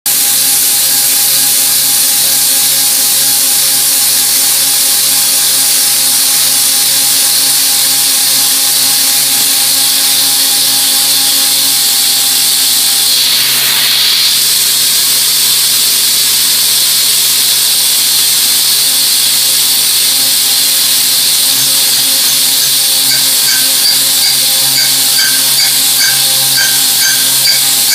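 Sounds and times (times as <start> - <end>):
hiss of cutting and air spray: 0.1 - 27.9
milling machine tones: 20.9 - 27.9.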